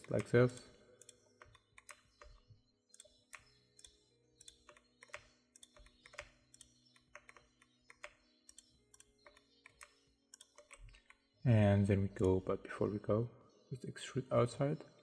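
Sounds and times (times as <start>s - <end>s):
computer keyboard typing: 0.0s - 11.2s.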